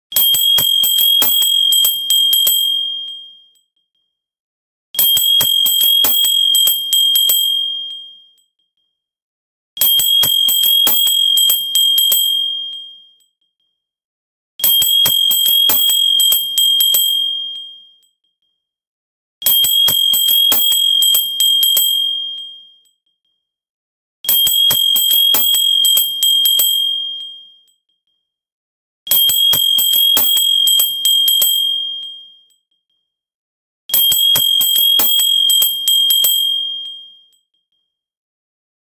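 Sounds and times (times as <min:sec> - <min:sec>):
high-pitched bell trills: 0:00.2 - 0:02.7, 0:05.1 - 0:07.6, 0:09.9 - 0:12.4, 0:14.9 - 0:17.2, 0:19.6 - 0:22.0, 0:24.4 - 0:26.8, 0:29.3 - 0:31.7, 0:34.0 - 0:36.6.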